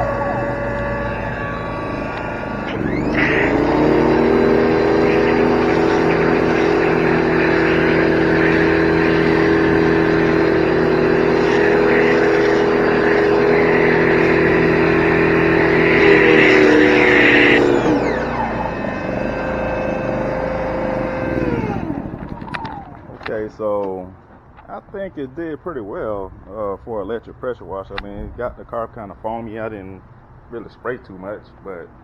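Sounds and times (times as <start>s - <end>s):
pressure washer motor and pump: 0.0s - 25.1s
generator droning: 0.0s - 32.0s.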